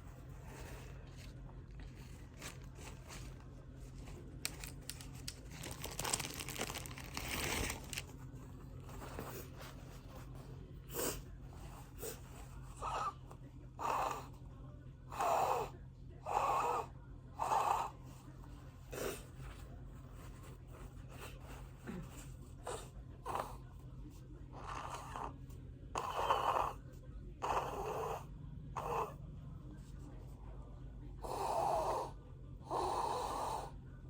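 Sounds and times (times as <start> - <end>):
tissue crinkling: 2.2 - 8.2.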